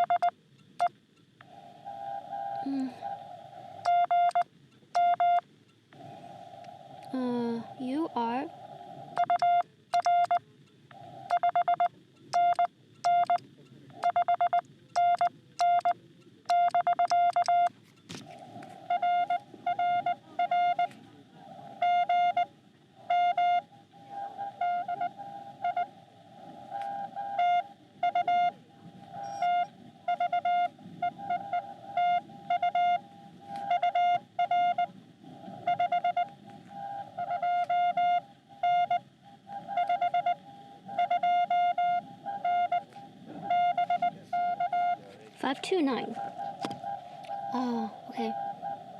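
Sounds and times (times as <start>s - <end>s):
morse code tone: 0.0s - 0.9s, 1.8s - 5.4s, 9.2s - 17.7s, 18.7s - 21.0s, 21.8s - 48.9s
band noise hiss: 17.7s - 48.9s.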